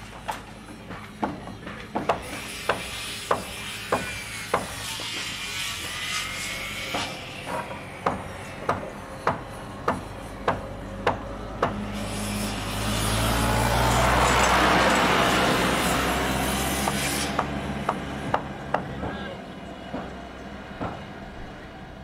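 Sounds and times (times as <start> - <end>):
hammer blows: 0.1 - 19.2
heavy machinery rumble: 4.5 - 22.0.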